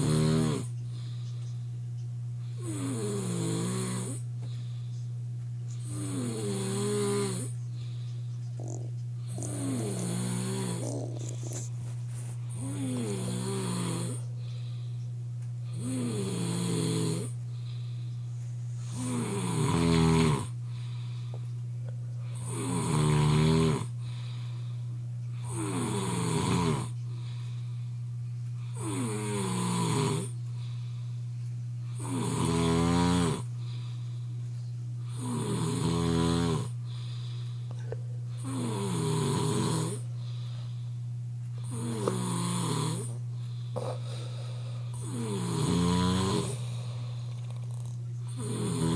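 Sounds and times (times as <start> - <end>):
person snoring: 0.0 - 0.7, 2.5 - 4.3, 5.8 - 7.6, 8.6 - 11.7, 12.5 - 14.5, 15.6 - 17.4, 18.8 - 21.0, 22.2 - 24.2, 25.4 - 27.0, 28.7 - 30.4, 31.9 - 33.9, 35.1 - 37.6, 38.3 - 40.6, 41.6 - 48.9
steady low hum: 0.0 - 48.9.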